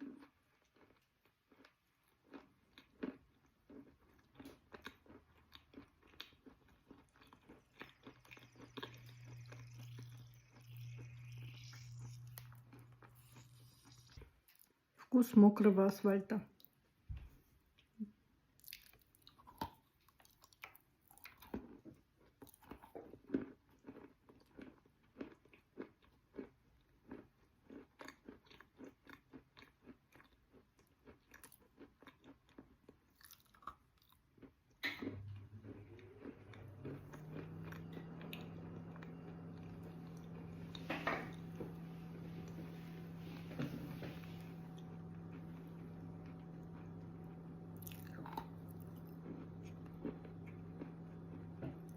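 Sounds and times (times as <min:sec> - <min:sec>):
chewing and crunching chalk: 0:00.0 - 0:15.1, 0:18.6 - 0:51.9
steady low hum: 0:07.2 - 0:14.3, 0:34.8 - 0:51.9.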